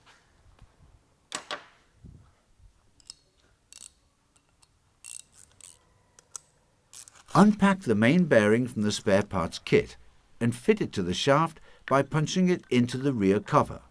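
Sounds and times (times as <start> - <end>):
metallic clicks of hand tools: 3.0 - 7.3.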